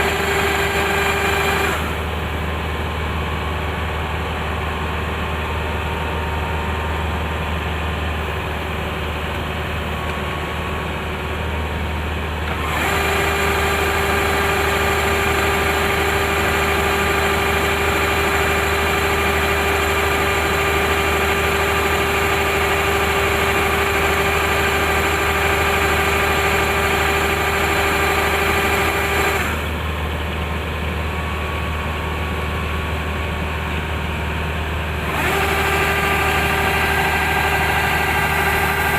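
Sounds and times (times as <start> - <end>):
combine harvester engine running: 0.0 - 38.9
high-pitched machine whine: 35.1 - 38.9.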